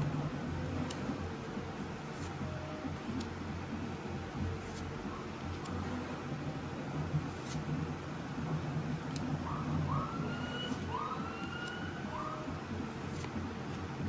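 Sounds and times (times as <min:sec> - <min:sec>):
low room hum: 0:00.0 - 0:14.0
faint emergency siren wailing: 0:09.4 - 0:12.6.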